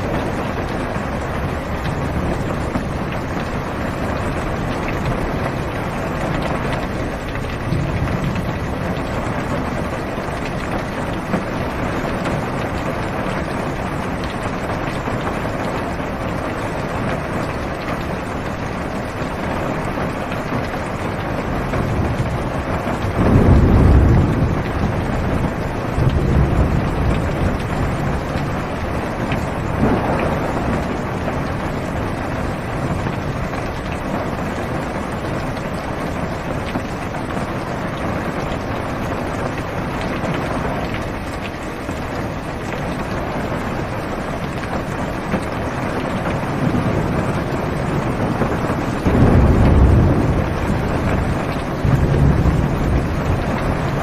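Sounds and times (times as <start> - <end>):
thunder rolling: 0.0 - 17.8, 19.8 - 42.0, 43.0 - 54.0
heavy rain on car roof: 0.0 - 54.0.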